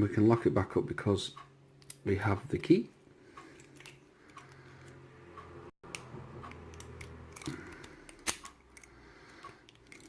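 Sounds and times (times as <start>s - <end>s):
lock and key metallic clicks: 5.9s - 10.0s.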